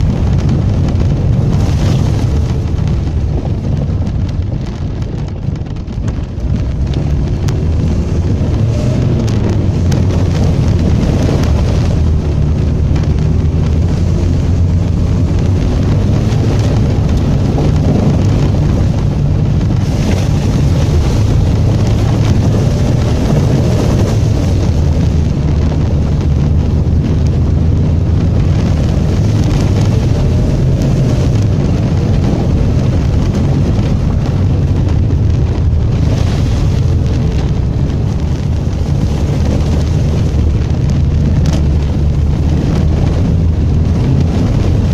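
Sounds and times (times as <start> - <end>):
car engine and tyre rumble: 0.0 - 44.9.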